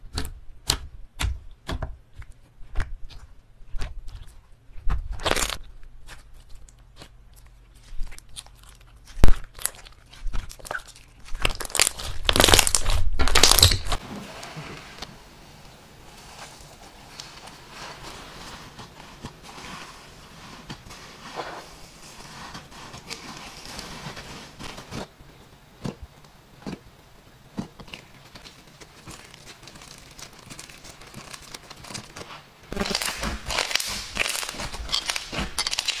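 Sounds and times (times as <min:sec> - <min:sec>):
slime crackling and popping: 0:07.7 - 0:14.0, 0:27.7 - 0:36.0.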